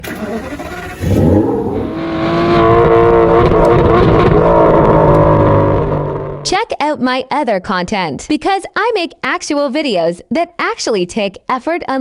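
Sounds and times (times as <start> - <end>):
car engine revving: 0.0 - 6.5.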